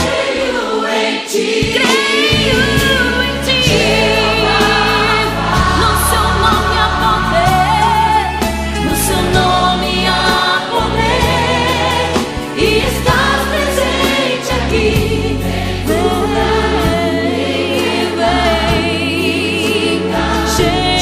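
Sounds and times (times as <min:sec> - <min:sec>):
gospel song with choir and band: 0:00.0 - 0:21.0.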